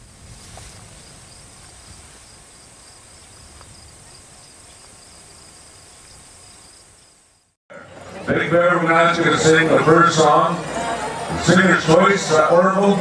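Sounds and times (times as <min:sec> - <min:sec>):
crickets chirring: 0:00.0 - 0:07.6.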